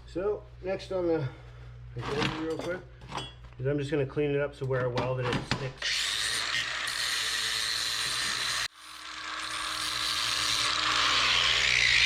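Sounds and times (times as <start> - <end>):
power grinder grinding metal: 5.8 - 12.0.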